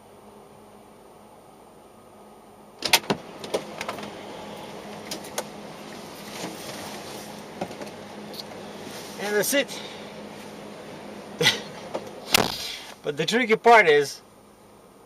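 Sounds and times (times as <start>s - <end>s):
low steady hum: 0.0s - 15.0s
sharp loud click: 12.3s - 12.7s.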